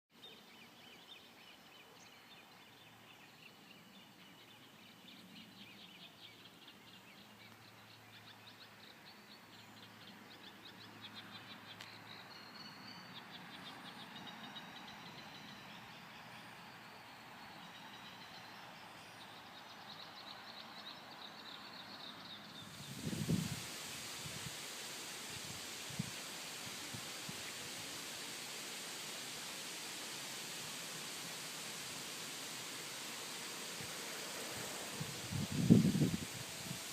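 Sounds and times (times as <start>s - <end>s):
outdoor hiss: 0.2s - 36.9s.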